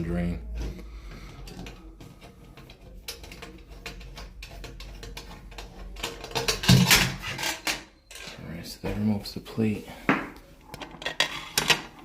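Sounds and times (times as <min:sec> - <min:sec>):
metal clatter with thump: 0:01.4 - 0:07.8.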